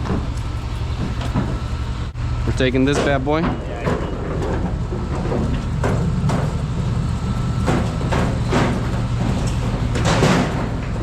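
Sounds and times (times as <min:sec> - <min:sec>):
cart rattles and knocks: 0:07.6 - 0:11.0.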